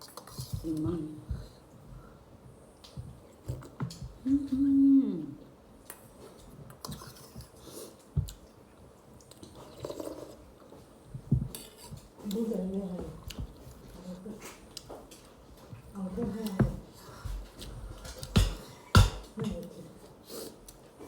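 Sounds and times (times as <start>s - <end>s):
person chewing food: 2.8s - 4.3s, 5.5s - 15.8s.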